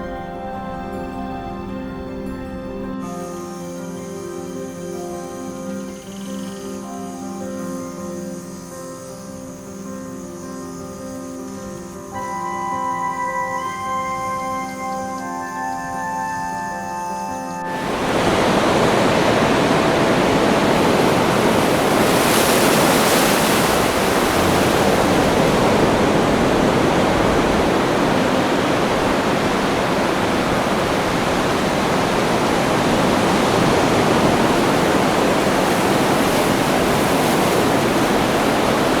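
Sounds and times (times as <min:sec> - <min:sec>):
rushing water roar: 0:17.7 - 0:39.0.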